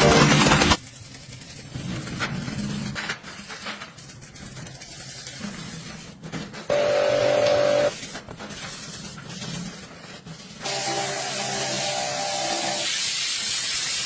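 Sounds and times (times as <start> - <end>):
pressure washer whine with spray hiss: 10.7 - 14.0.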